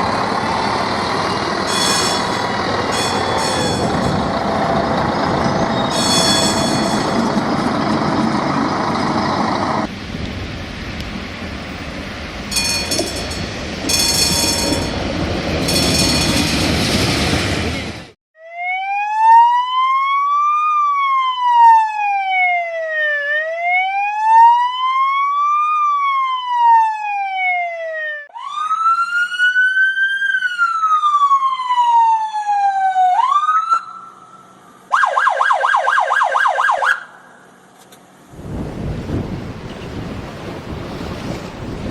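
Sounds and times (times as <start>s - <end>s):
emergency vehicle siren: 0.0s - 9.9s, 18.4s - 37.4s.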